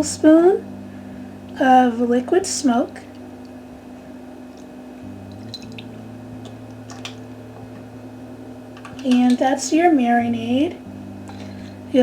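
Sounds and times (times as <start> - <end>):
steady low hum: 0.0 - 12.0
faint liquid drips: 2.8 - 7.9.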